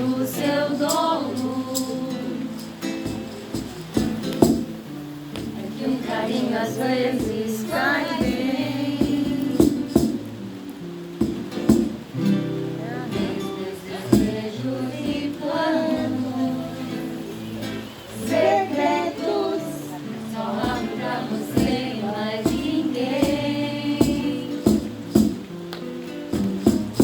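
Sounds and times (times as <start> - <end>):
woman singing: 0.0 - 2.8, 5.4 - 10.9, 12.7 - 17.4, 18.1 - 25.2
strummed acoustic string instrument: 0.0 - 27.0.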